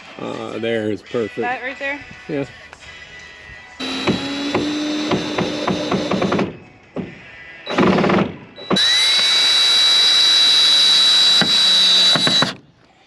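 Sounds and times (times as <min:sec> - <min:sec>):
power drill whining: 0:03.8 - 0:06.5, 0:07.7 - 0:12.6.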